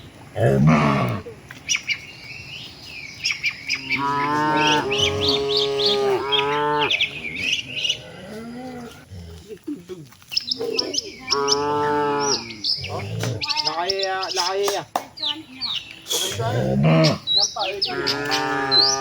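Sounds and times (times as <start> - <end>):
small birds chirping: 0.0 - 19.0
cattle mooing: 0.4 - 1.3, 3.7 - 9.4, 11.2 - 13.5, 16.4 - 17.3, 17.9 - 19.0.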